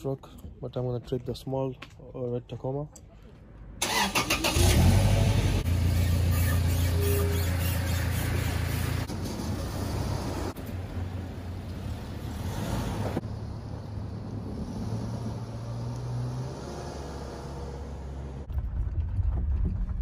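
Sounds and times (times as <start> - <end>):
road noise: 0.8 - 18.5
truck engine hum: 3.8 - 18.5.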